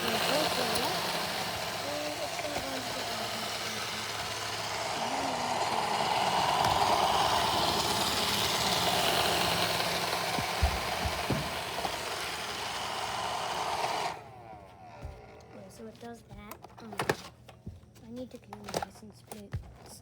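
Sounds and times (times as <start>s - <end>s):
robot vacuum whirring: 0.0s - 15.8s.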